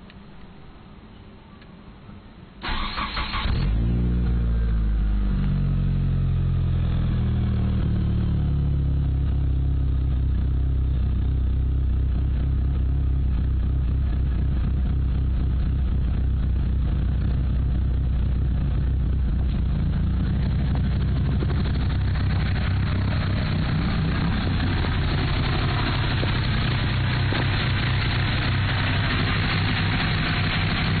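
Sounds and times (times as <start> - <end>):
car engine idling roughly: 11.1 - 31.0.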